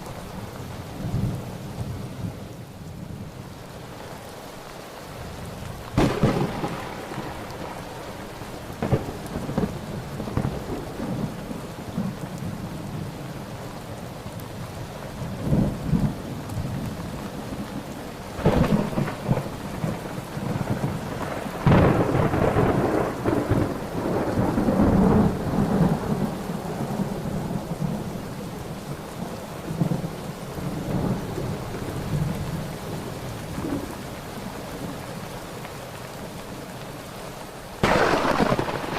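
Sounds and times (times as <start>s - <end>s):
steady rain: 0.0s - 38.9s
thunder cracking and rumbling: 5.4s - 13.2s, 15.2s - 34.0s, 37.8s - 38.9s.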